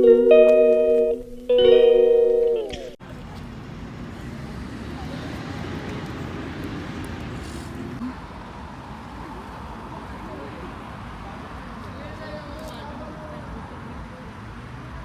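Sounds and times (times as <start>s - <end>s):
plucked guitar music: 0.0s - 3.0s.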